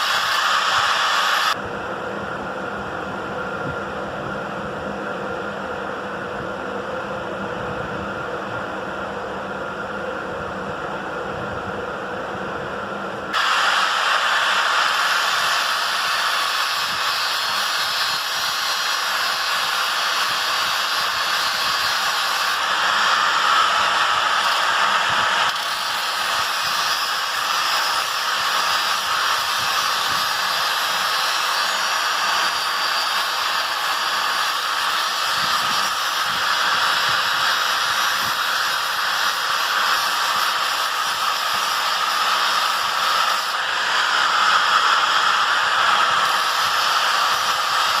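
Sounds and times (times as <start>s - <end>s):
power tool grinding metal: 13.3s - 48.0s.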